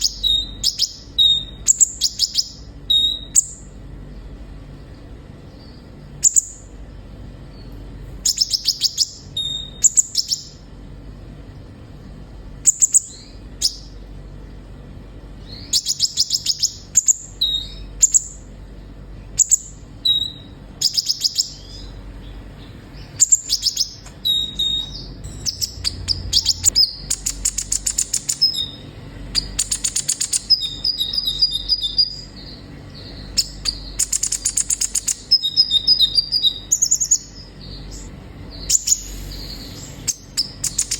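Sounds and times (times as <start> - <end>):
thin whistled bird notes: 0.0 - 3.6, 7.5 - 10.6, 15.4 - 18.4, 19.4 - 40.9
sunbird chirping trills: 0.0 - 11.4, 12.0 - 40.9.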